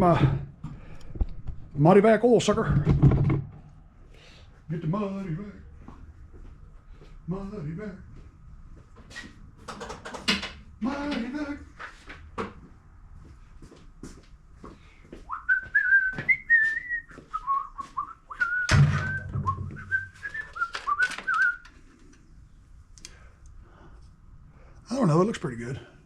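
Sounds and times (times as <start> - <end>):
handling clicks and knocks: 9.7 - 10.8
man whistling a tune: 15.3 - 21.7.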